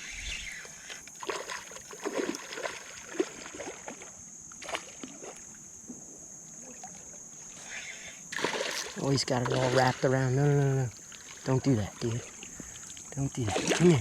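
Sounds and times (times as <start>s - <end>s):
steady high-pitched whine: 0.0s - 1.2s
water splashing and sloshing: 0.0s - 14.0s.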